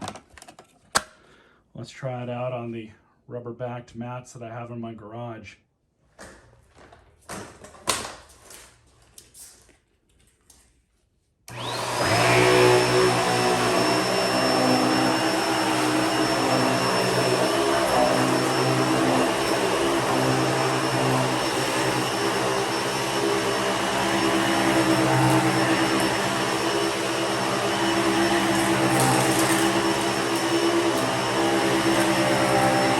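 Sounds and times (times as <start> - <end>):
vacuum cleaner motor whine: 11.5 - 32.9.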